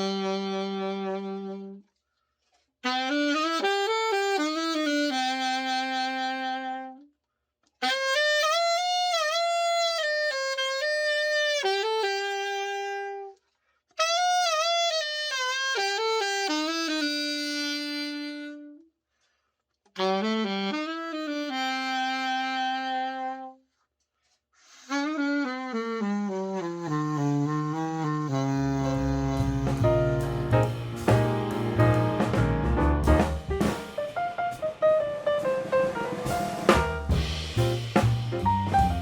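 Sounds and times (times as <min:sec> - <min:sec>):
alto saxophone playing: 0:00.0 - 0:01.8, 0:02.8 - 0:07.1, 0:07.8 - 0:13.4, 0:14.0 - 0:18.9, 0:20.0 - 0:23.6, 0:24.8 - 0:39.0
deeper musical backing: 0:28.8 - 0:39.0.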